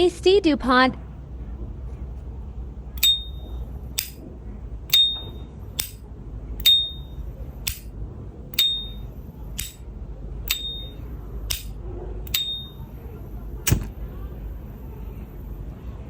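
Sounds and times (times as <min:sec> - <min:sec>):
lighter lid ringing pings: 0:03.0 - 0:04.2, 0:04.9 - 0:06.0, 0:06.6 - 0:07.9, 0:08.6 - 0:09.8, 0:10.5 - 0:12.9.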